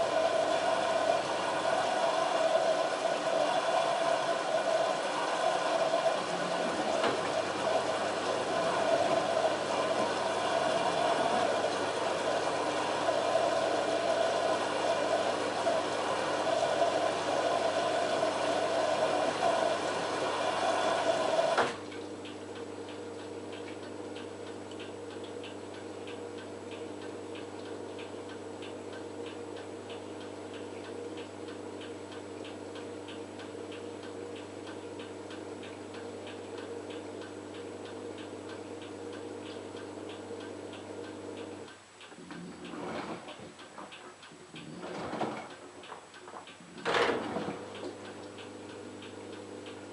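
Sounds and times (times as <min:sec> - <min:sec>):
washing machine drone: 0:00.0 - 0:49.9
washing machine hum: 0:00.0 - 0:49.9
light ticking: 0:21.8 - 0:46.8, 0:47.7 - 0:49.9.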